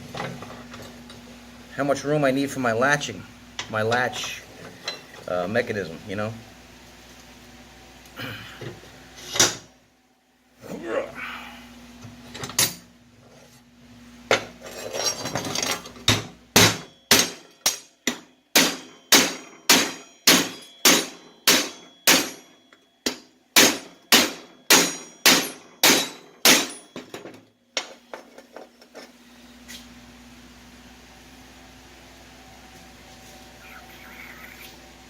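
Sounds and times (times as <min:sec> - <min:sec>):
hammer ringing on steel: 0:16.6 - 0:27.1.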